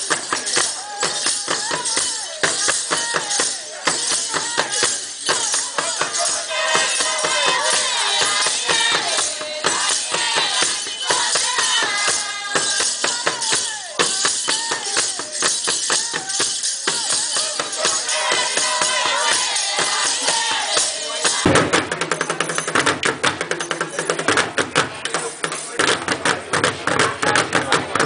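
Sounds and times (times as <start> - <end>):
people singing: 0.0 - 22.4
drumming: 0.0 - 28.0
rattles shaking: 0.0 - 28.0.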